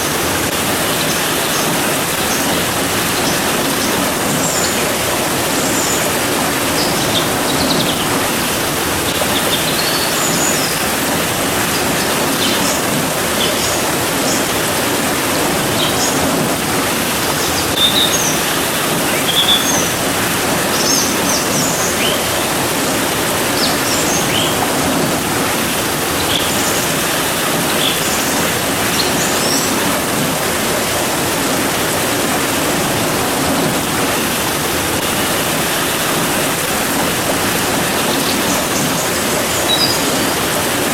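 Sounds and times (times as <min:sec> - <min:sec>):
steady rain: 0:00.0 - 0:40.9
small birds chirping: 0:00.9 - 0:10.9, 0:17.3 - 0:22.6, 0:23.4 - 0:24.7, 0:27.6 - 0:29.9, 0:37.8 - 0:40.6.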